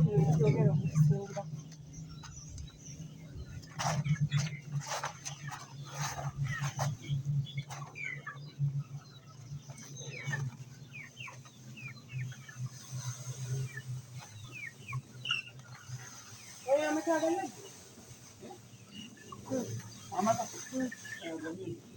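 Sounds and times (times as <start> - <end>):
low hum: 0.0 - 16.7
chicks peeping: 0.0 - 21.9.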